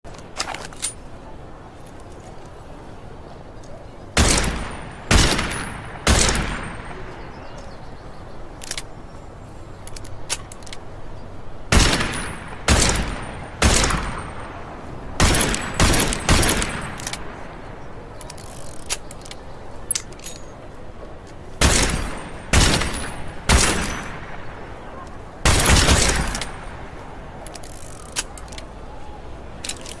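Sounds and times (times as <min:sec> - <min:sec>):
faint clicks: 0:09.8 - 0:10.9, 0:27.4 - 0:28.8.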